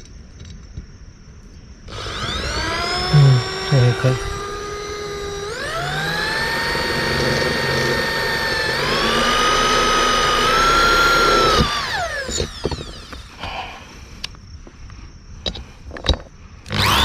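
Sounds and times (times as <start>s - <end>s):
electric drill whining: 1.9s - 14.3s, 16.6s - 17.0s.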